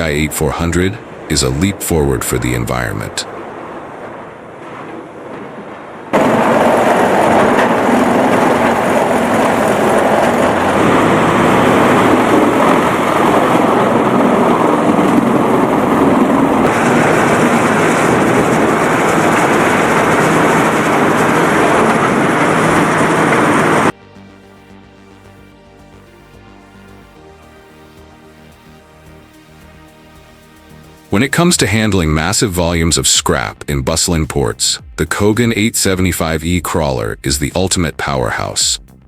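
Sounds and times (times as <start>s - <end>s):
industrial grinder crushing: 6.2s - 23.9s.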